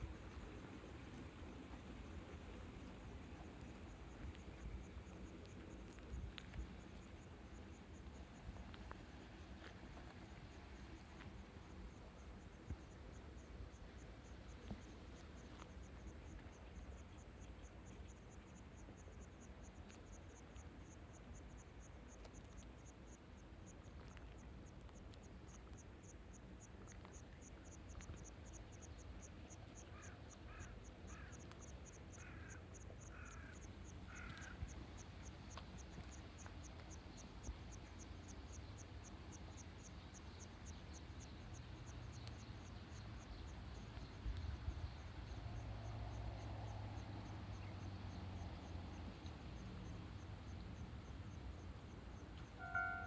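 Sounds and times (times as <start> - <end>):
insect chirping: 27.1 - 53.0
crow cawing: 34.1 - 34.5.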